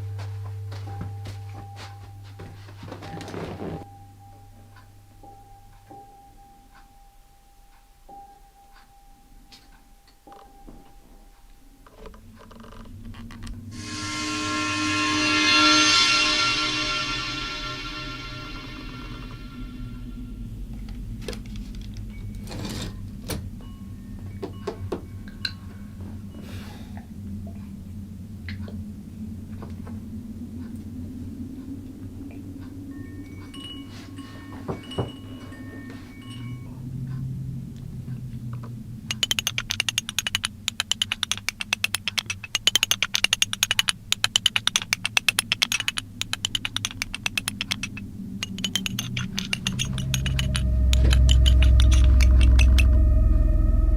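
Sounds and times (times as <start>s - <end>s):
rustling or scraping: 0.0s - 4.0s, 11.9s - 23.6s, 33.2s - 53.9s
steady low hum: 0.0s - 53.9s
typewriter keys clacking: 39.1s - 52.9s
clicks and knocks: 39.1s - 53.0s.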